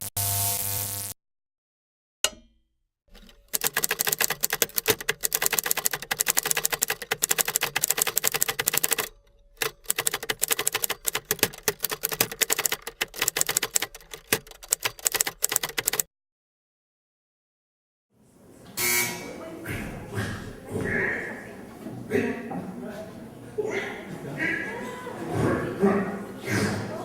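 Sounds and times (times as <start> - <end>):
rapid typewriter-like clicking: 3.2 - 16.1.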